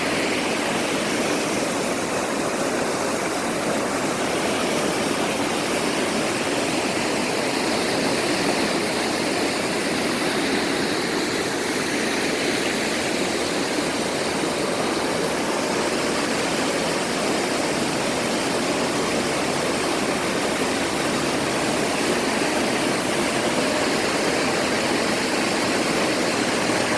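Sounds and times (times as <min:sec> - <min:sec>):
stream rushing over rocks: 0:00.0 - 0:26.9.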